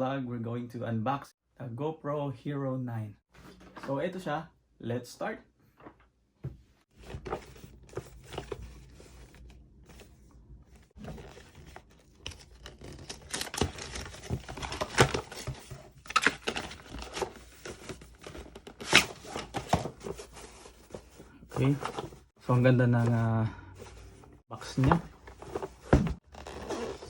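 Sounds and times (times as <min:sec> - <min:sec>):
handling clicks and scratches: 0:06.9 - 0:22.2
packaging tearing and crinkling: 0:11.4 - 0:15.4.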